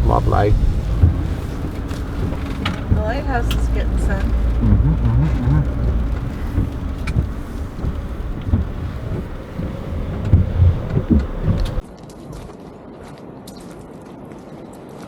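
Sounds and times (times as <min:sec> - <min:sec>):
van engine rumble: 0:00.0 - 0:11.8
wind on microphone: 0:00.0 - 0:11.8.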